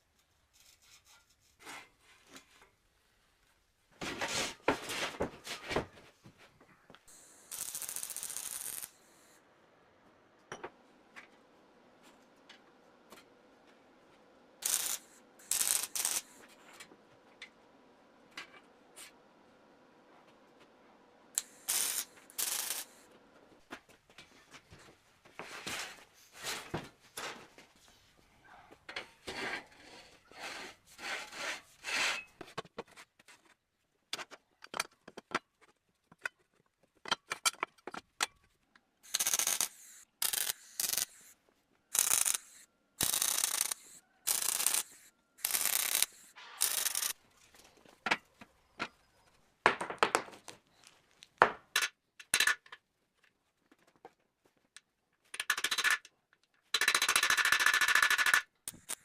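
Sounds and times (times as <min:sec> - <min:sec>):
machine rubbing and scraping strokes: 0:14.6 - 0:16.8, 0:21.4 - 0:23.0, 0:39.1 - 0:47.2.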